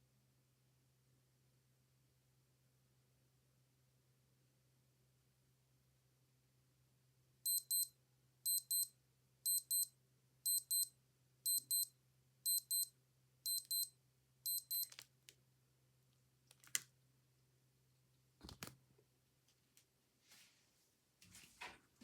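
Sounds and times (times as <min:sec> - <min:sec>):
watch double beeps: 0:07.5 - 0:07.9, 0:08.5 - 0:08.9, 0:09.5 - 0:09.9, 0:10.5 - 0:10.9, 0:11.5 - 0:11.9, 0:12.5 - 0:12.9, 0:13.5 - 0:13.9, 0:14.5 - 0:14.9.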